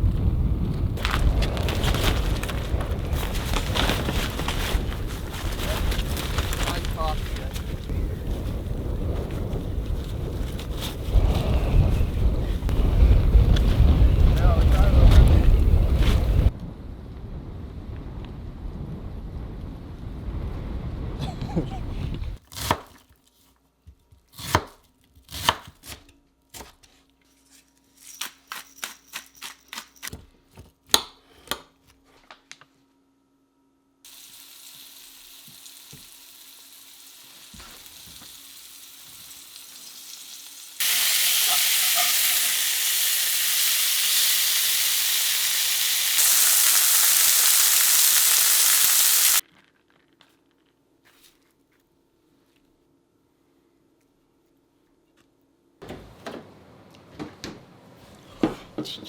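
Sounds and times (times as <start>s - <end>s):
wind on microphone: 0.0s - 22.4s
fish frying in hot oil: 34.1s - 49.4s.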